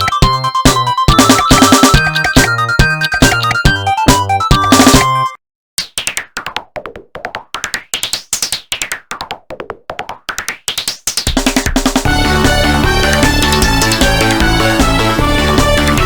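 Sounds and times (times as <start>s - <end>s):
polyphonic ringtone music: 0.0s - 5.4s.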